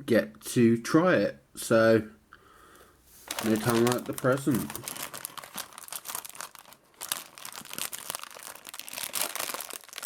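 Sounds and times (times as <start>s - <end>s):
plastic packet crinkling and tearing: 3.2s - 10.0s.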